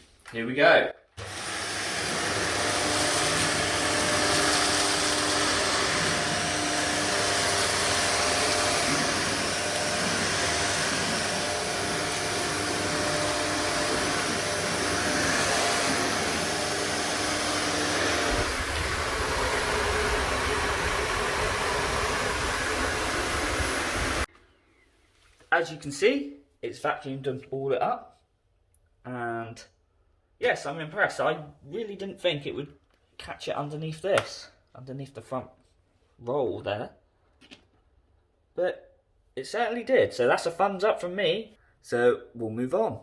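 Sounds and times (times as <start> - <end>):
vacuum cleaner running: 1.2 - 24.3.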